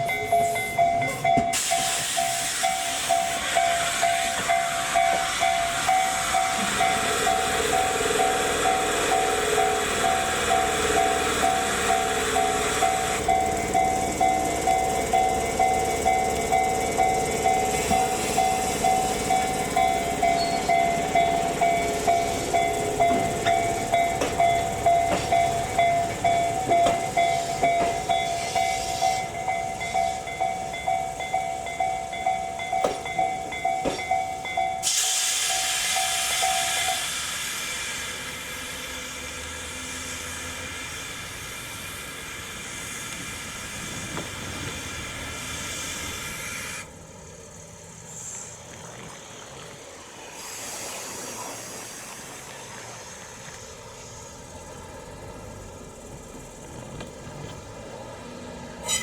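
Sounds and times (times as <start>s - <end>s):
sharp train clicks: 0.0s - 46.9s, 53.5s - 59.0s
train running by: 0.0s - 59.0s.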